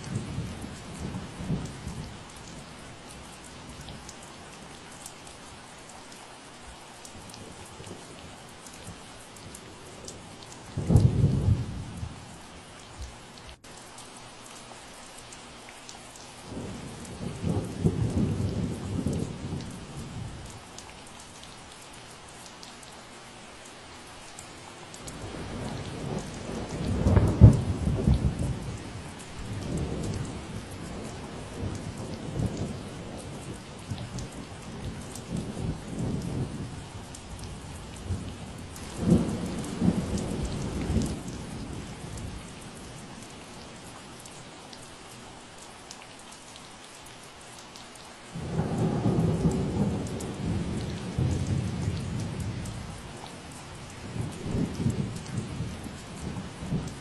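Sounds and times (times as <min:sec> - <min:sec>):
steady rain: 0:00.0 - 0:57.0
rolling thunder: 0:10.7 - 0:12.2, 0:25.2 - 0:36.8, 0:37.4 - 0:42.4, 0:48.4 - 0:53.1, 0:54.0 - 0:57.0.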